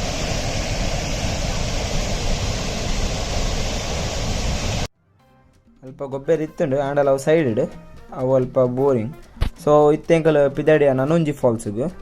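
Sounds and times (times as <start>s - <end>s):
waterfall roaring: 0.0s - 4.9s.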